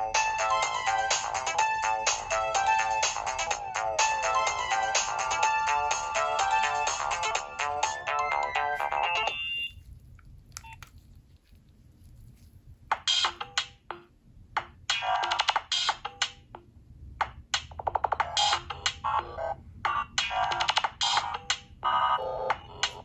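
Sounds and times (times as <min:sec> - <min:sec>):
mobile phone ringtone: 0:00.0 - 0:09.7, 0:18.4 - 0:19.6.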